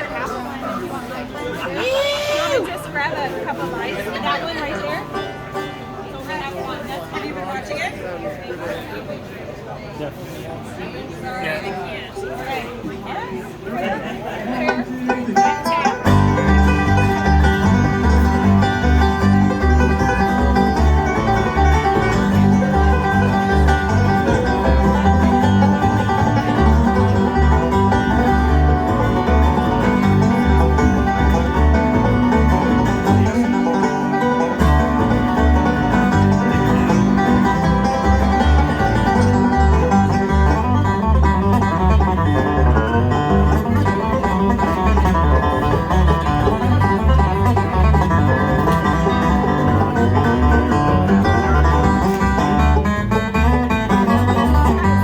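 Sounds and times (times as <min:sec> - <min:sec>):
banjo picking: 0:00.0 - 0:07.9, 0:13.5 - 0:55.0
guitar picking: 0:14.6 - 0:55.0
bass line: 0:16.0 - 0:55.0.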